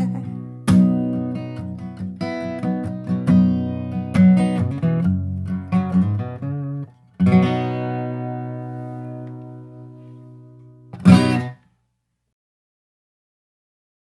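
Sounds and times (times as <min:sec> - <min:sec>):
acoustic guitar playing: 0:00.0 - 0:11.7.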